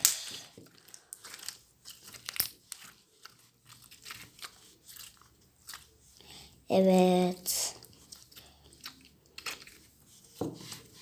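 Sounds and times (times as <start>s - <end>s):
slime clicking and crackling: 0.0s - 6.0s.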